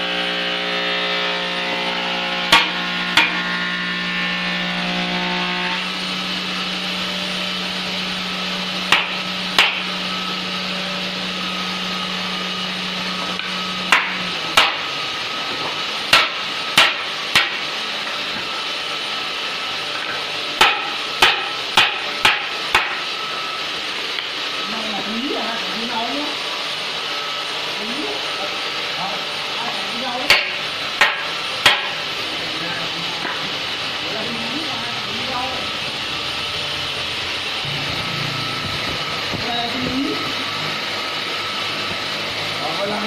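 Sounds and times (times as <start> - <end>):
hammer striking wood: 2.5 - 3.5, 8.9 - 9.9, 13.4 - 14.9, 15.6 - 17.6, 20.0 - 23.0, 30.3 - 32.0
steady hum: 19.1 - 43.0.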